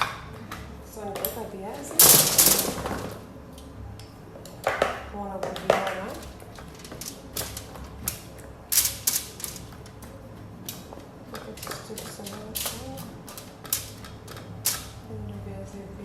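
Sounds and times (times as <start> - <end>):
potato pieces clattering on foil tray: 2.0 - 3.2, 5.7 - 9.8.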